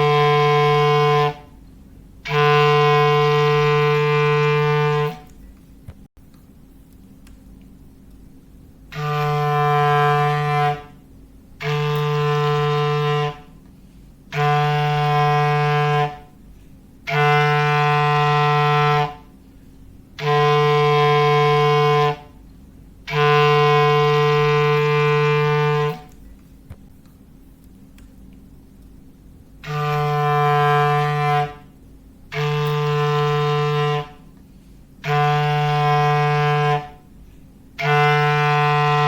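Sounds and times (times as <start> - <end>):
low foghorn blasts: 0.0 - 1.6, 2.2 - 5.3, 8.9 - 13.6, 14.3 - 19.4, 20.1 - 22.4, 23.0 - 26.2, 29.6 - 37.2, 37.8 - 39.0.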